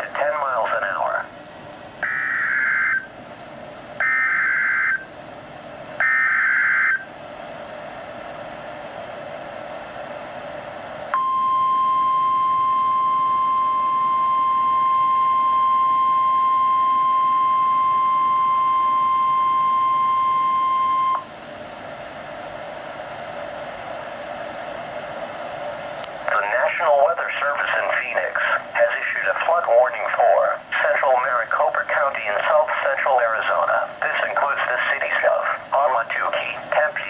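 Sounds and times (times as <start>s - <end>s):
radio hiss: 0.0s - 1.4s, 25.7s - 37.0s
steady warning tone: 2.0s - 3.2s, 4.0s - 5.2s, 6.0s - 7.2s, 11.1s - 21.4s.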